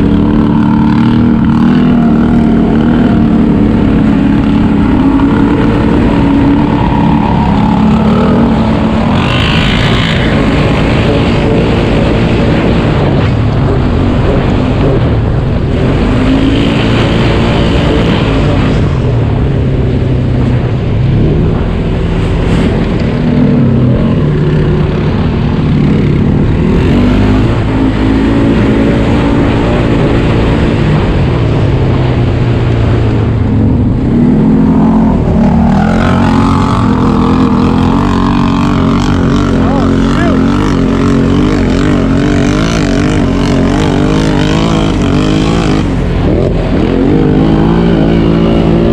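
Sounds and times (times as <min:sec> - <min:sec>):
vehicle engine revving: 0:00.0 - 0:48.9.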